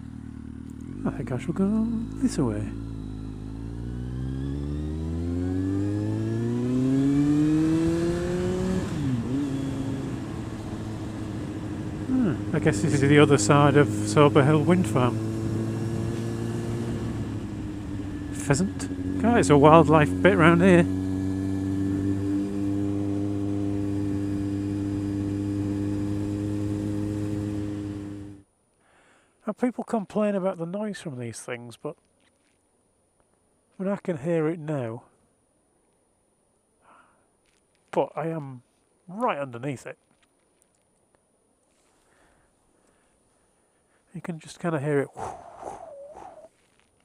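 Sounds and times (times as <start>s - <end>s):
motorcycle engine accelerating: 0.0s - 28.4s, 45.1s - 46.9s
wind noise: 45.1s - 46.5s.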